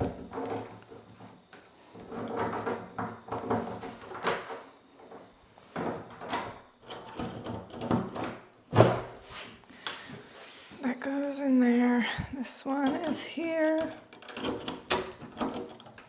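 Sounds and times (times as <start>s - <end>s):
metal door knob parts clicking: 12.8s - 16.0s.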